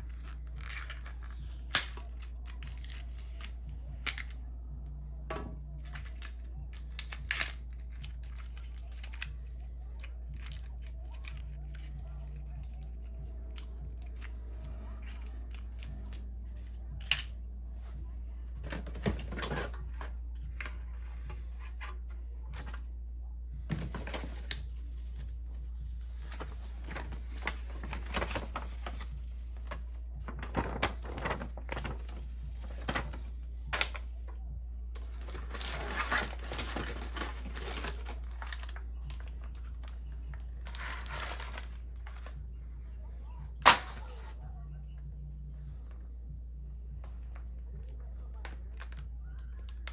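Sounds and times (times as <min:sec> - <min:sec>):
cardboard and plastic rustling: 0:00.0 - 0:04.4, 0:05.3 - 0:44.4
steady low hum: 0:00.0 - 0:49.9.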